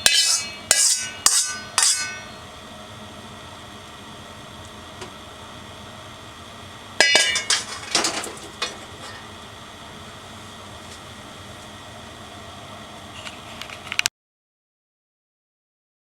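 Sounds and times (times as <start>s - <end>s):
kitchenware clattering: 7.0s - 9.3s.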